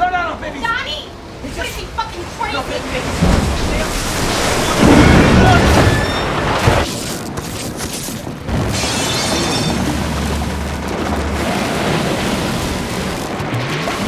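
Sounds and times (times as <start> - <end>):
rushing water: 0.0 - 14.0
wind: 0.0 - 14.0
waves booming against boat: 1.2 - 7.4, 8.2 - 14.0
deep rumble: 3.1 - 6.9.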